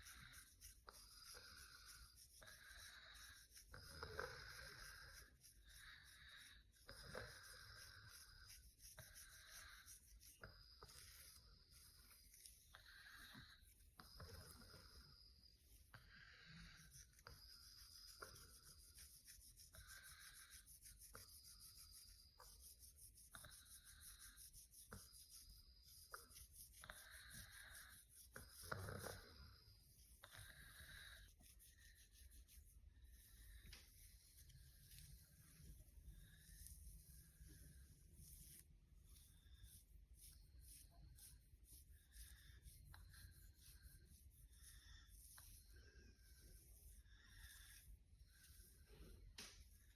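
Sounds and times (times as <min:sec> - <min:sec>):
fingernails scratching through hair: 0:16.4 - 0:49.9.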